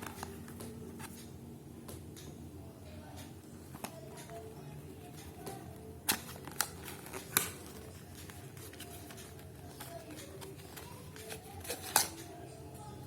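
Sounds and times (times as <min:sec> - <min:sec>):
faint packaging handling noise: 0:00.0 - 0:01.2, 0:03.6 - 0:12.6.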